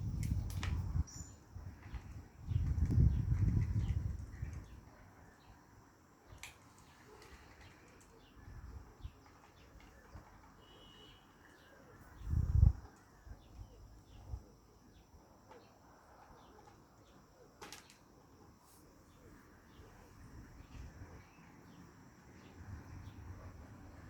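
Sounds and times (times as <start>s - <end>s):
faint bird chirps: 1.0s - 1.5s, 6.8s - 23.6s
high insect hum: 7.8s - 24.0s.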